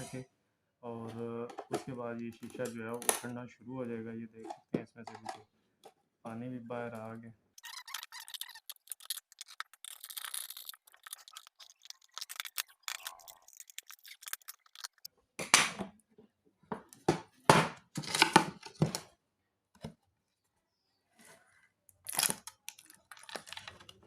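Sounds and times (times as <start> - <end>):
hand tools scraping and prying: 7.6 - 15.1
sealant cracking: 7.6 - 15.1, 22.0 - 24.0.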